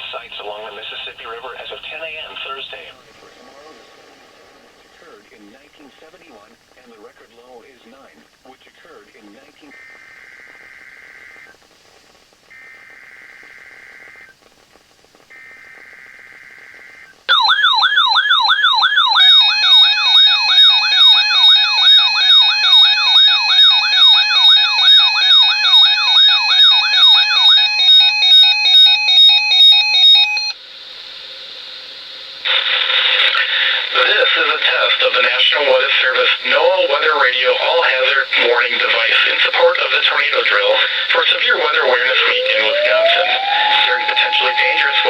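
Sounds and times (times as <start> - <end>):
warbling alarm siren: 15.4 - 30.6, 41.4 - 45.0
beeping tones: 41.8 - 45.0.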